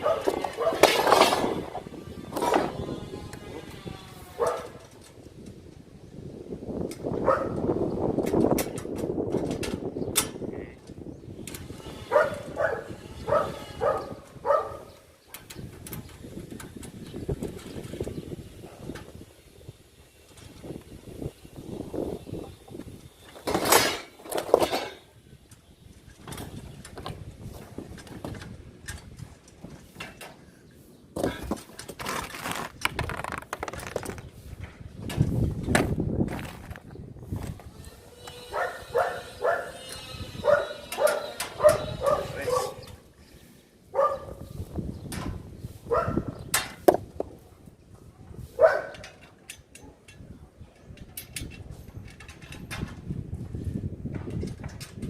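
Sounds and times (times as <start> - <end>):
dog barking: 0.0 - 0.8, 4.4 - 4.7, 7.2 - 7.6, 12.1 - 14.9, 38.5 - 39.8, 40.4 - 42.8, 44.0 - 44.4, 45.9 - 46.2, 48.6 - 49.0.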